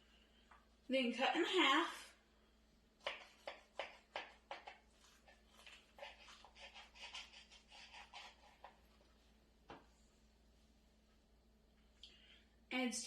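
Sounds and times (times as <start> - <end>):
knife sawing through tortilla wrap: 3.1 - 8.8.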